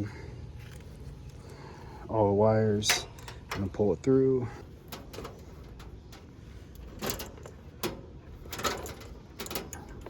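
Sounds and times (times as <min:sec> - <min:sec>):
wire and metal scraping and clicking: 0:02.8 - 0:10.0.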